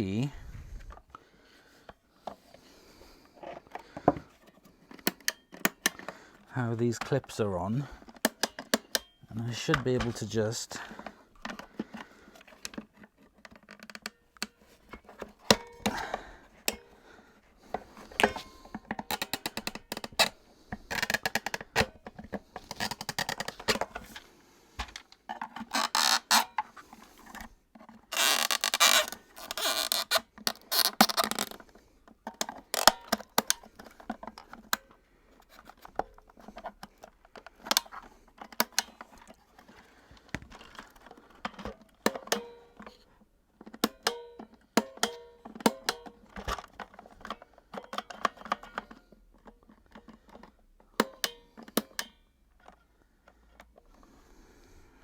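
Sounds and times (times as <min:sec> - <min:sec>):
plastic parts clicking and knocking: 0:01.8 - 0:54.2
plastic scraping and rubbing: 0:03.2 - 0:43.9.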